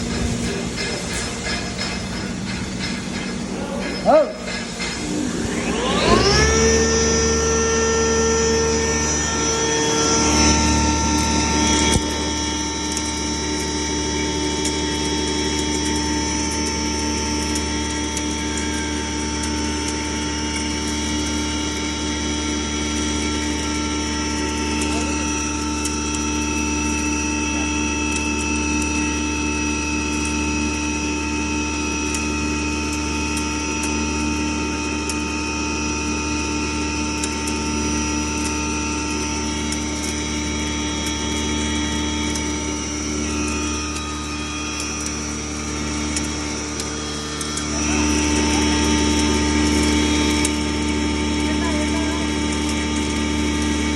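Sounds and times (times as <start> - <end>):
mechanical rattling: 0.0 - 21.0
grinder machine humming and whining: 0.0 - 53.9.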